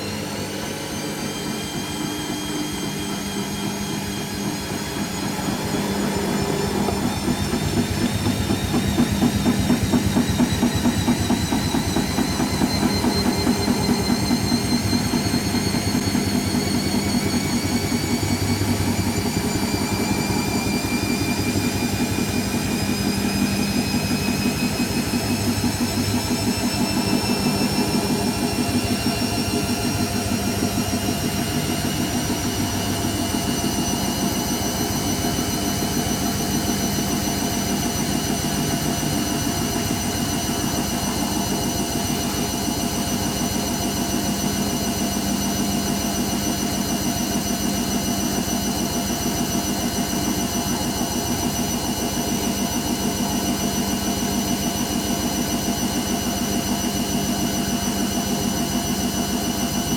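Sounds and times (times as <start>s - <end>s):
washing machine motor whine: 0.0s - 59.9s
drum rumble and vibration: 3.2s - 45.1s.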